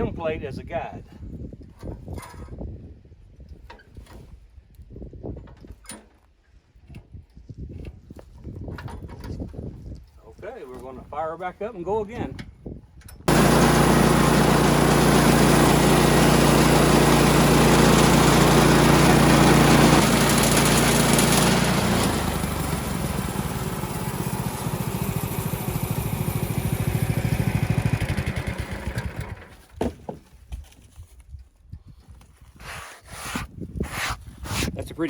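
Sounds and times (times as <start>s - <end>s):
band blade cutting log: 13.3s - 24.1s, 32.6s - 34.8s
sawmill gas engine running: 13.3s - 29.6s.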